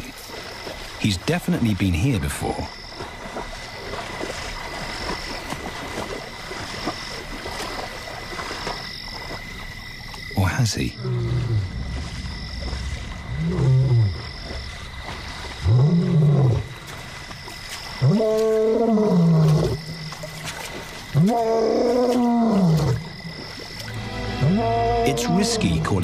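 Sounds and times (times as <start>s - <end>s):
lion roaring: 10.9s - 12.0s, 12.6s - 14.3s, 15.6s - 16.7s.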